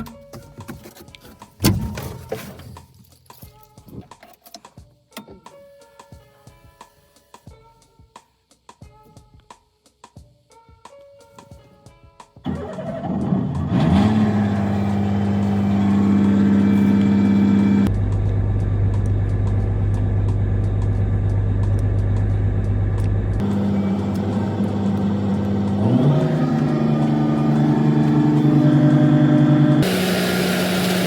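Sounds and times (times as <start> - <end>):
heavy diesel engine running: 12.5 - 31.0.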